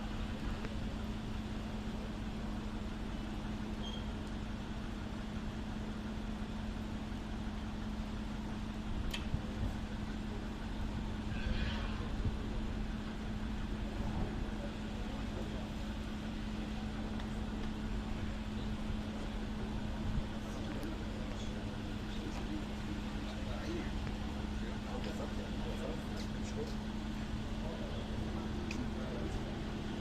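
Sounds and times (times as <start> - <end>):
low hum: 0.0 - 30.0
traffic rumble: 0.0 - 30.0
sharp click: 9.1 - 9.4
faint voices: 9.3 - 30.0.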